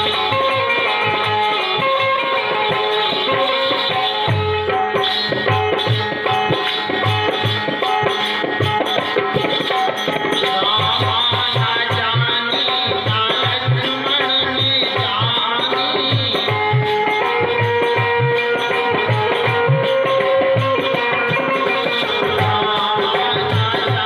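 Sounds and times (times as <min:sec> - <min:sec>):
hand drum steady beat: 0:00.0 - 0:24.0.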